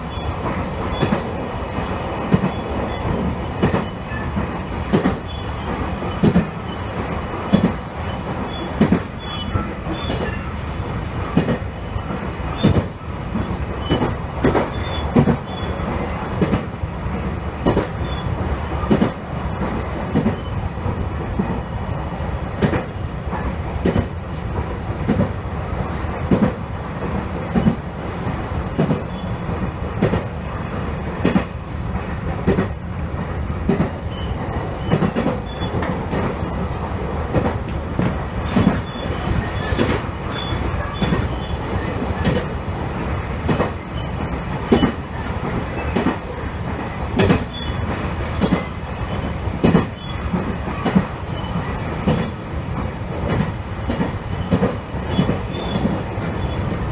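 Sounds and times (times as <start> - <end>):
train rumble: 0.0 - 56.9
wheels clacking over rail joints: 33.6 - 56.9.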